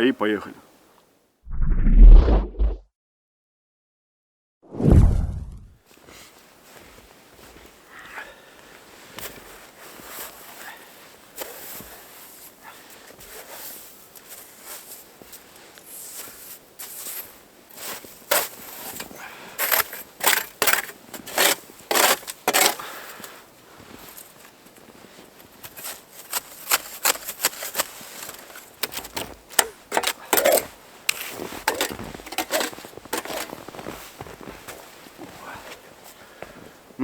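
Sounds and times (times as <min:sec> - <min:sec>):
footsteps crunching through snow: 0:05.9 - 0:07.8, 0:13.1 - 0:19.0, 0:23.7 - 0:28.8, 0:30.6 - 0:36.8.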